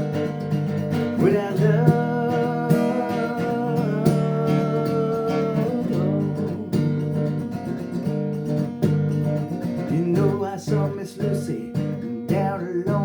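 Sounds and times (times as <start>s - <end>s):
acoustic guitar strumming: 0.0s - 13.0s
person singing: 1.1s - 7.2s, 9.9s - 13.0s.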